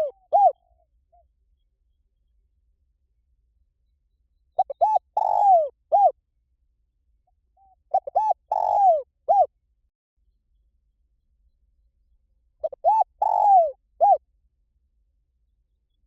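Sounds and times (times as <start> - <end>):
dove cooing: 0.0 - 0.7, 4.6 - 6.2, 7.6 - 9.5, 12.6 - 14.2.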